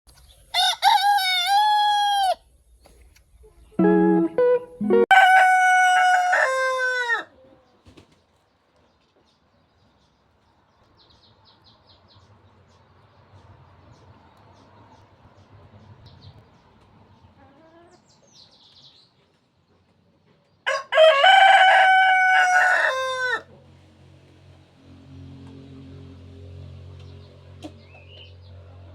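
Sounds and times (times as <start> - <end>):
rooster crowing: 0.5 - 2.4, 5.1 - 7.4, 20.6 - 23.5.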